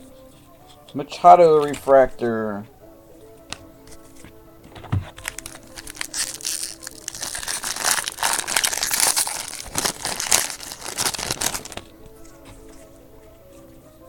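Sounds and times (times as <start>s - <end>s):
foil wrapper tearing and crinkling: 5.1s - 11.9s.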